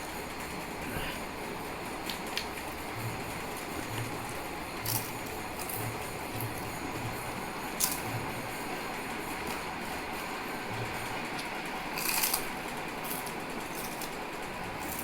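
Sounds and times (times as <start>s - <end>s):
chips crunching: 4.8s - 5.9s, 7.8s - 8.1s, 11.4s - 15.0s
chewing: 11.4s - 14.2s.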